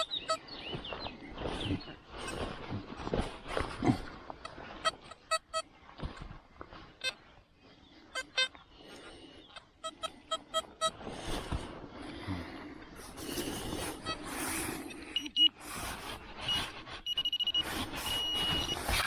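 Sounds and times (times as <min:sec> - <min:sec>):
metal detector beeping: 0:00.0 - 0:00.4, 0:04.4 - 0:05.7, 0:07.0 - 0:07.2, 0:08.2 - 0:08.6, 0:09.5 - 0:11.4, 0:13.0 - 0:19.0.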